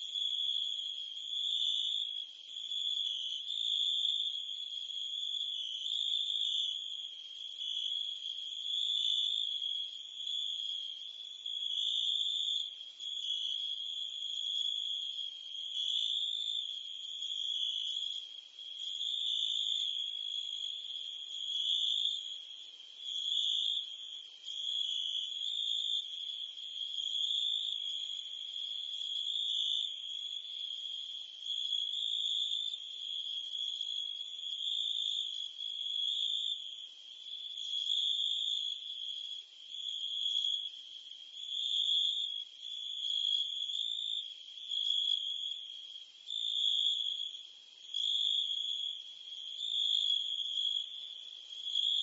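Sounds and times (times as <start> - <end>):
crickets and cicadas chirping: 0.0 - 52.0.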